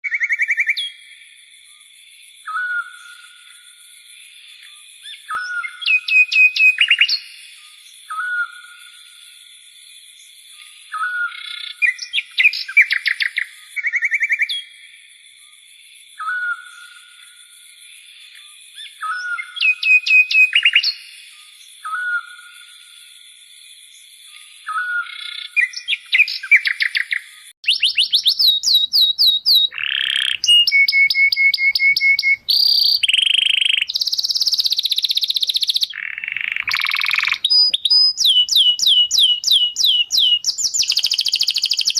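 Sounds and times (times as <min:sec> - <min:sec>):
bird whistling and trilling: 0:00.0 - 0:01.1, 0:02.4 - 0:03.3, 0:05.0 - 0:08.9, 0:10.9 - 0:14.8, 0:16.2 - 0:17.1, 0:18.8 - 0:22.7, 0:24.6 - 0:41.9
bird chirping calls: 0:00.0 - 0:01.3, 0:02.4 - 0:03.7, 0:04.4 - 0:09.2, 0:10.1 - 0:15.0, 0:18.1 - 0:22.9, 0:23.9 - 0:41.9.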